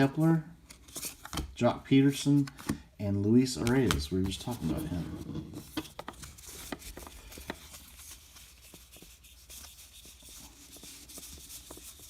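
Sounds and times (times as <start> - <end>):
cards sliding and rubbing: 3.6 - 12.0.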